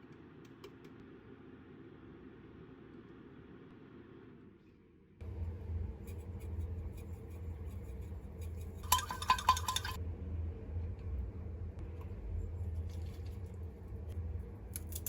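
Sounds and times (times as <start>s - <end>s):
steady low hum: 0.0s - 15.0s
tableware clinking: 8.8s - 10.0s.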